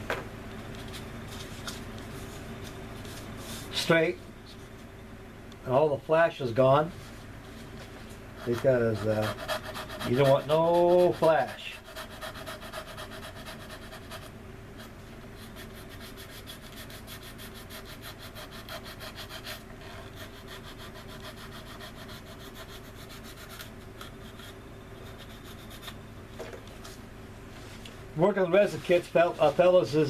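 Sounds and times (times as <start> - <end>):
steady low hum: 0.0 - 30.0
hand sanding resin: 8.4 - 26.0.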